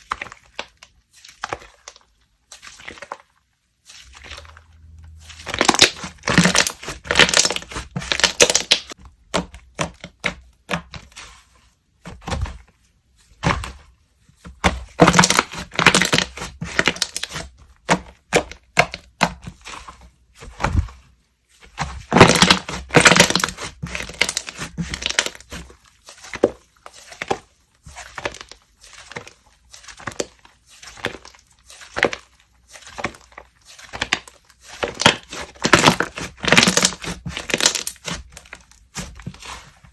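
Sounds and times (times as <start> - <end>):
slime crackling and popping: 4.0 - 10.4, 14.9 - 19.4, 22.1 - 25.6, 28.1 - 39.5.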